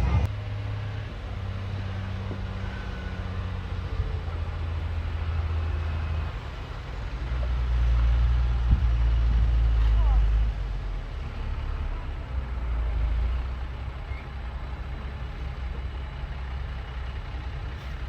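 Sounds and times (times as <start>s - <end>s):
bulldozer diesel engine droning: 0.0s - 18.0s.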